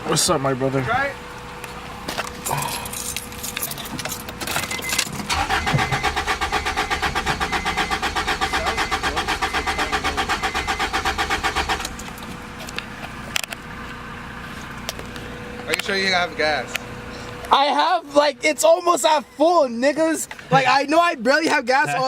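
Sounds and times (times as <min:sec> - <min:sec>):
car engine cranking by starter: 0:01.9 - 0:17.6.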